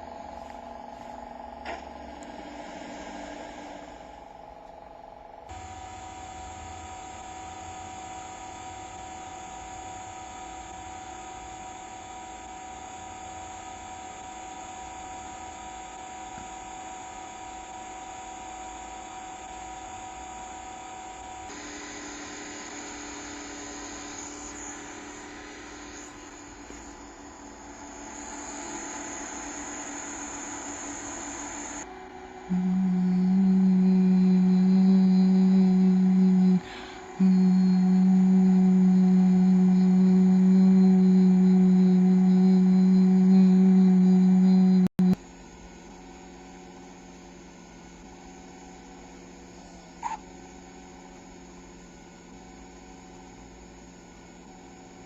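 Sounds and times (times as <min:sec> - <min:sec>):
mechanical hum with high whine: 0:00.0 - 0:55.0.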